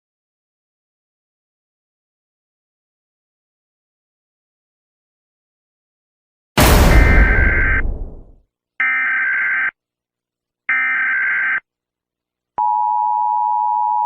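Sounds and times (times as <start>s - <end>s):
loud crash: 6.6s - 8.4s.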